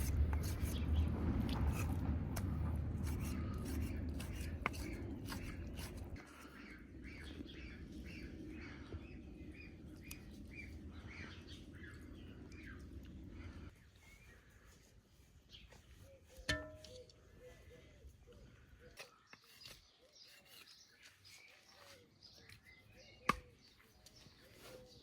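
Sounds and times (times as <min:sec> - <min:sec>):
small birds chirping: 0:00.0 - 0:01.1, 0:02.4 - 0:25.0
low rumble: 0:00.2 - 0:04.3.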